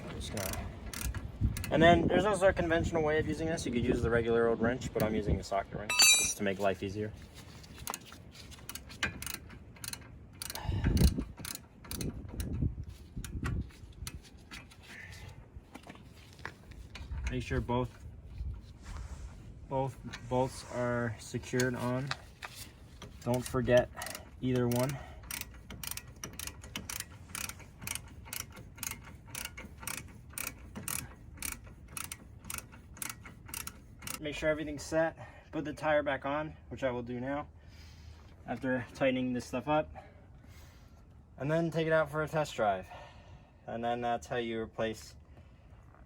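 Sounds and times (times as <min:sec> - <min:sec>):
ratchet wrench clicking: 0:00.4 - 0:01.7, 0:08.7 - 0:12.5, 0:23.3 - 0:34.2
tool handling clatter: 0:05.9 - 0:06.5.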